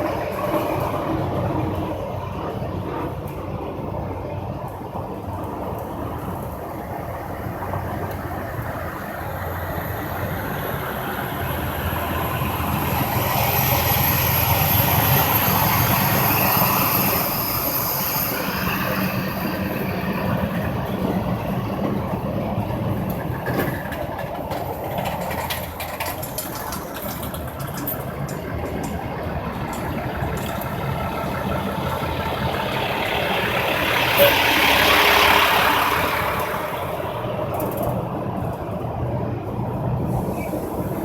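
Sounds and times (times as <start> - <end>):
road and tyre noise: 0.0 - 41.0
truck engine running: 24.7 - 41.0.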